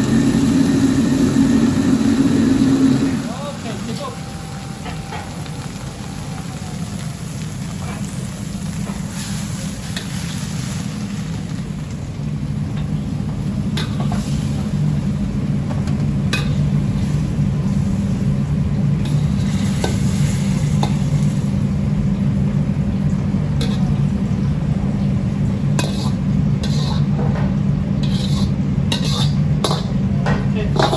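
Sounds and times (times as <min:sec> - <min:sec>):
vegetables sizzling in a pan: 0:00.0 - 0:24.4
steady low hum: 0:00.0 - 0:30.9
spatula scraping a pan: 0:25.8 - 0:27.1, 0:28.0 - 0:29.9.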